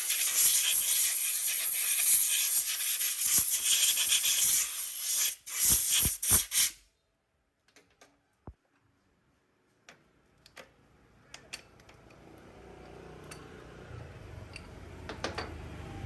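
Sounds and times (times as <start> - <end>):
compressed air hissing: 0.0 - 6.8
short air bursts: 0.0 - 6.8.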